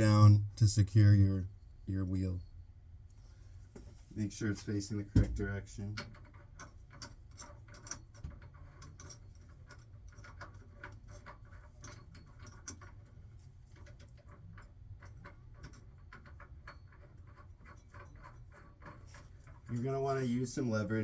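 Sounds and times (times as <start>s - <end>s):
steady low hum: 0.0s - 7.4s
small clicks and rubs of nut: 6.0s - 19.9s.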